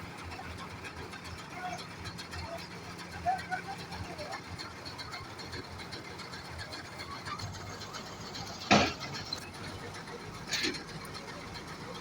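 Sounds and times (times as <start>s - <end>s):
metal clanks: 7.3s - 9.5s, 10.3s - 11.4s.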